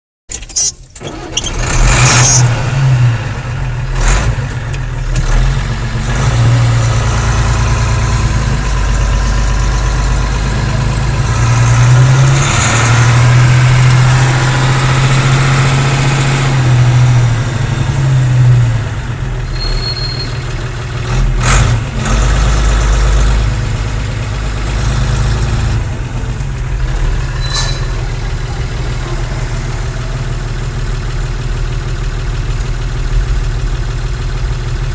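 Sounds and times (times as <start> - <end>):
sharp clicks: 0.3 - 2.6
lorry diesel engine revving: 0.4 - 34.9.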